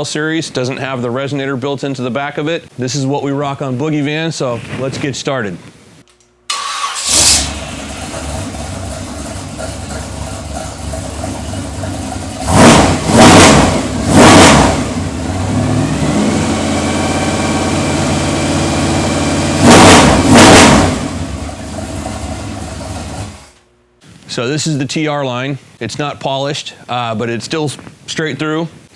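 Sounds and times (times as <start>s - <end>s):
engine idling and revving: 6.8s - 23.6s.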